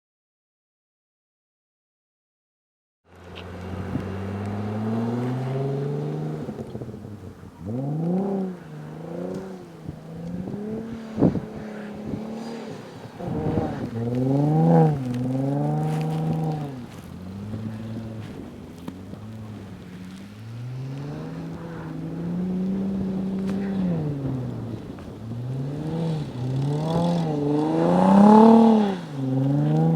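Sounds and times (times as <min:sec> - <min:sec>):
car engine revving: 0:03.1 - 0:29.9.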